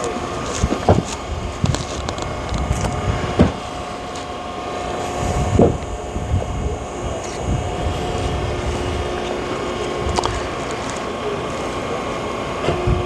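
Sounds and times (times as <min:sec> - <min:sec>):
logs cracking: 0:00.0 - 0:04.3
log splitter humming: 0:00.0 - 0:13.0.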